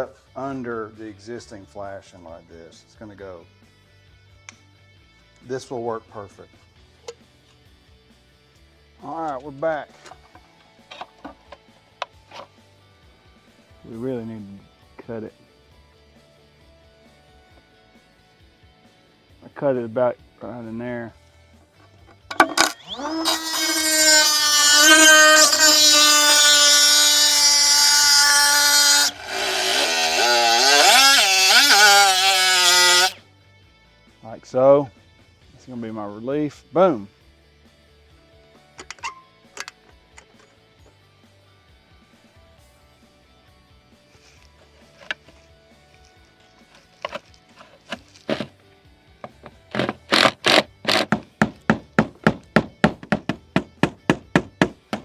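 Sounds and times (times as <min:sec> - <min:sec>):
power tool cutting: 0:22.3 - 0:33.2, 0:48.3 - 0:48.5, 0:49.4 - 0:55.0.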